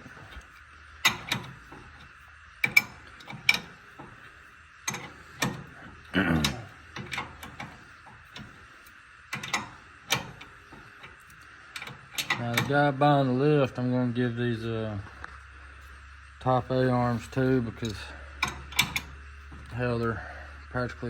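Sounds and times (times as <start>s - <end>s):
wrench clicking on nut: 1.0s - 1.6s, 2.6s - 3.7s, 4.9s - 5.6s, 9.3s - 11.2s, 11.8s - 12.7s.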